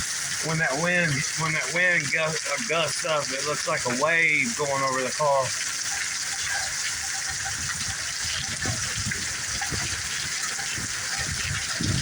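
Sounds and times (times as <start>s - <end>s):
heavy rain pouring: 0.0s - 12.0s
strong wind gusts: 7.4s - 12.0s.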